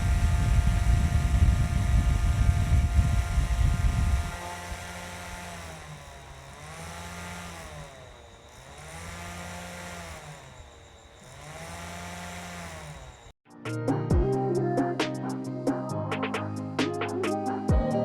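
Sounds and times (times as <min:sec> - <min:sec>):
small fan motor whining: 0:00.0 - 0:13.4.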